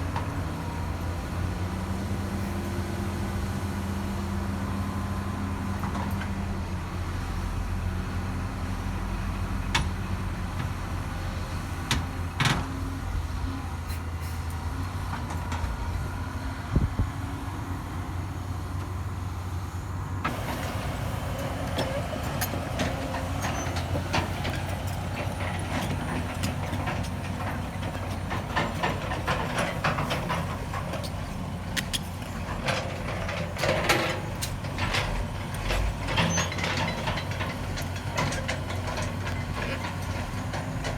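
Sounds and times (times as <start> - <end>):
heavy diesel engine running: 0.0 - 40.9
metal clanks and knocks: 20.3 - 40.9.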